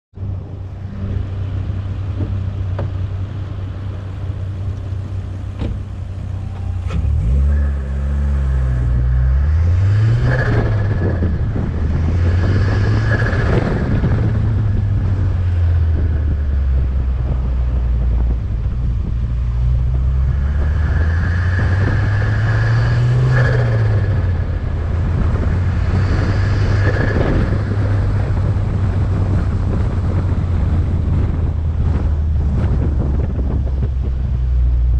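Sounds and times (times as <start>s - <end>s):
car engine revving: 0.2s - 34.9s.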